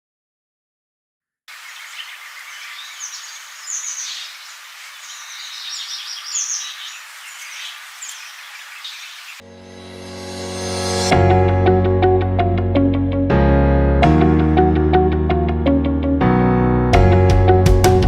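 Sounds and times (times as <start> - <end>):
birds chirping: 1.5 - 9.4
steady outdoor hiss: 1.5 - 9.4
background music: 9.4 - 18.0.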